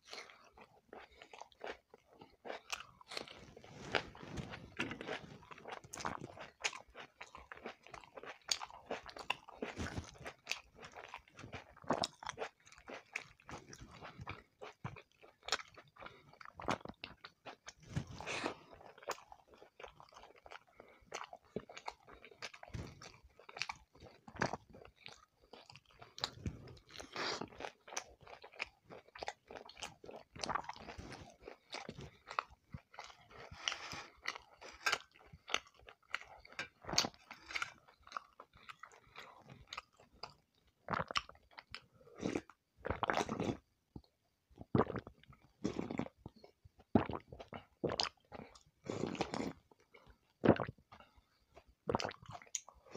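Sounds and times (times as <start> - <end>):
close chewing and mouth noises: 0.0 - 52.9.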